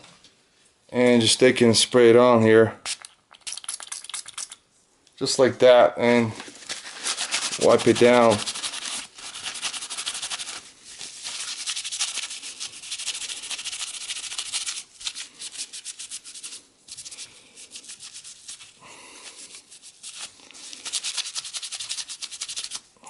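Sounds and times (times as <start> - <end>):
paper towel scrubbing metal: 6.6 - 22.8.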